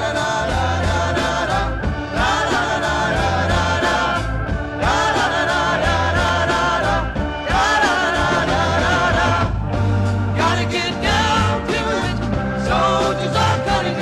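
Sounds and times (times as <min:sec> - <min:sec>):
rock song with vocals: 0:00.0 - 0:14.0.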